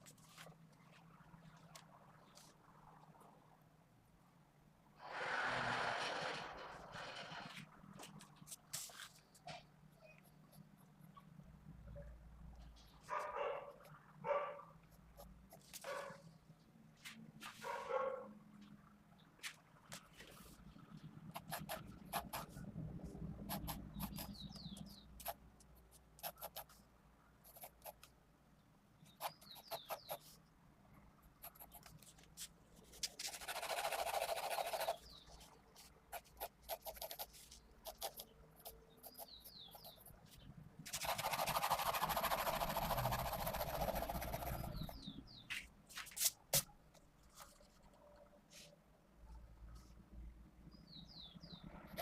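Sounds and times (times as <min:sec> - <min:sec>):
pencil scratchy shading: 0:21.3 - 0:22.6, 0:23.4 - 0:24.5, 0:25.2 - 0:26.8, 0:27.4 - 0:28.1, 0:29.2 - 0:30.4, 0:31.4 - 0:35.2, 0:35.8 - 0:40.1, 0:40.9 - 0:45.1.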